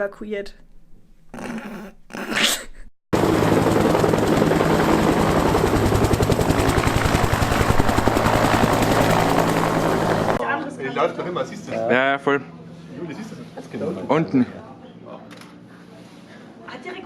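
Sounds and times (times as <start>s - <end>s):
helicopter engine hum: 3.2s - 10.4s
helicopter rotor beating: 3.2s - 10.4s.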